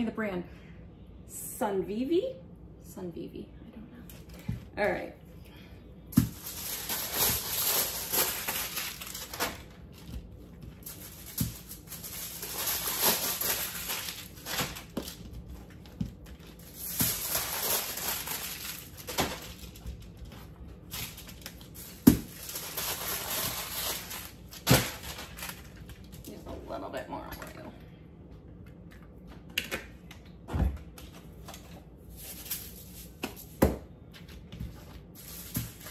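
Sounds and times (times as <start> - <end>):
aluminium foil crinkling: 6.1 - 26.5, 31.5 - 33.5, 34.9 - 35.9.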